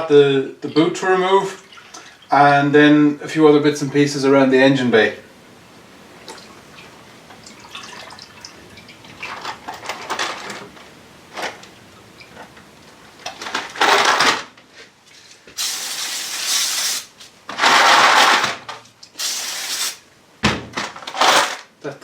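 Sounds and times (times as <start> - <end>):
aerosol spray hissing: 15.6 - 17.2, 19.2 - 20.0.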